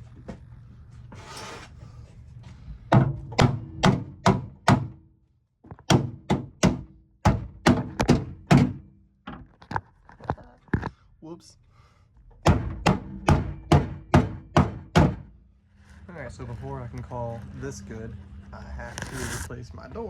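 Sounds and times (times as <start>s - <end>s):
hammer on sheet metal: 2.9s - 5.0s, 12.4s - 15.3s.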